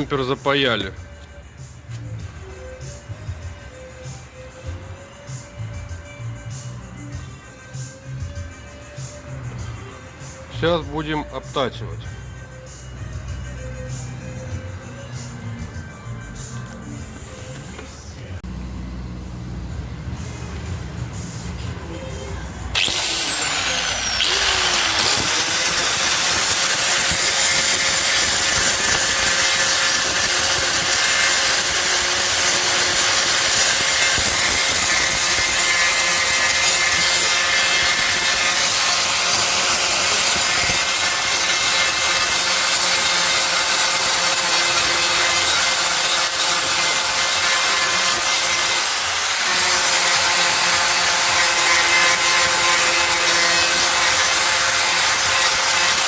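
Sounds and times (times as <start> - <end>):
power tool grinding plastic: 22.7 - 56.0.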